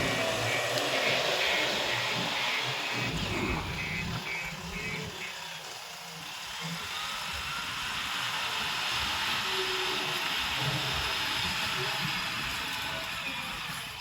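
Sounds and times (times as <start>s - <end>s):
reversing alarm beeping: 0.0s - 5.6s
heavy machine engine running: 0.0s - 14.0s.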